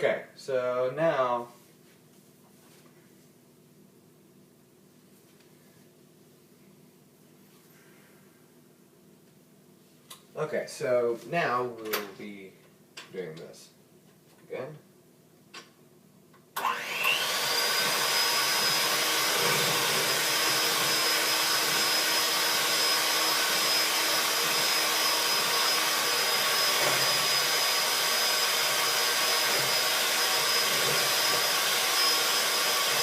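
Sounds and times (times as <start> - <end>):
electric mixer motor whining: 16.6 - 33.0.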